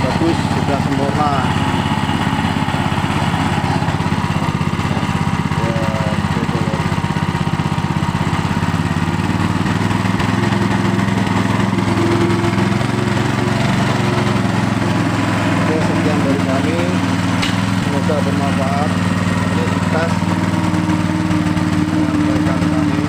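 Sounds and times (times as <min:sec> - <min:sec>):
water pump motor hum: 0:00.0 - 0:23.0.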